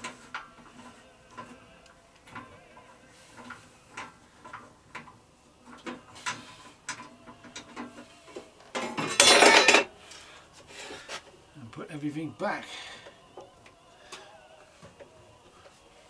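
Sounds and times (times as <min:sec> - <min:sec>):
metal tools clinking: 0:02.2 - 0:02.5, 0:09.0 - 0:09.9
metal parts clattering rattle: 0:08.8 - 0:09.9.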